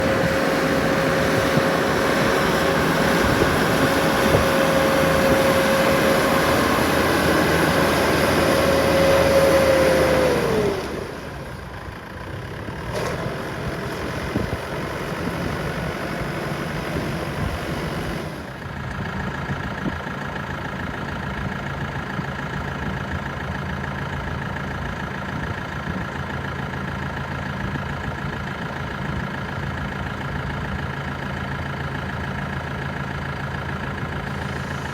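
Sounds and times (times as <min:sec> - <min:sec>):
tractor diesel engine running: 0:00.0 - 0:34.9.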